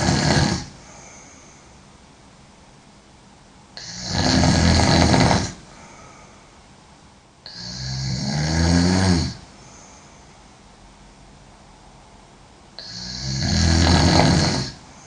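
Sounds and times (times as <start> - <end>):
woman snoring loudly: 0.0 - 0.8, 3.8 - 5.7, 7.5 - 9.4, 12.8 - 14.8.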